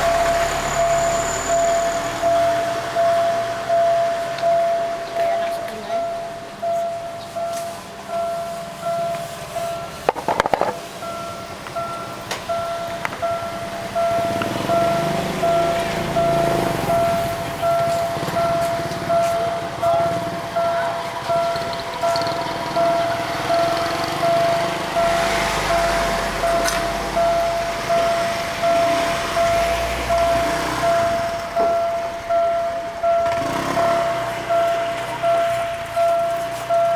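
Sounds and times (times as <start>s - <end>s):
level crossing alarm dinging: 0.0s - 36.9s
vehicle engine: 0.0s - 36.9s
clatter of clicks: 10.1s - 10.8s.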